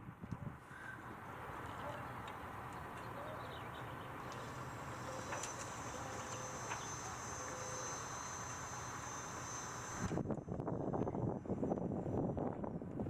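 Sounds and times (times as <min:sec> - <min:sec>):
steady background hiss: 0:01.3 - 0:10.1
thin high whine: 0:01.3 - 0:12.4.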